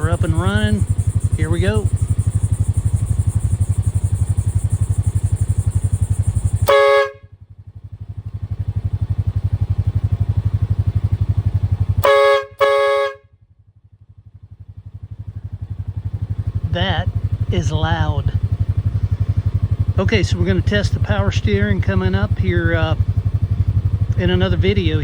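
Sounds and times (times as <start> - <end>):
engine running with steady pulse: 0.0 - 25.0
train horn blasts: 6.6 - 7.3, 12.0 - 13.3.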